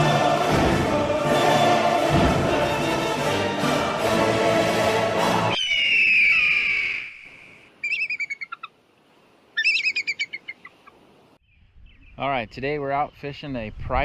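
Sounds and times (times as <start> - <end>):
music: 0.0 - 5.6
falling whistle-like note: 5.5 - 7.5
songbird singing: 5.5 - 8.8, 9.5 - 13.6.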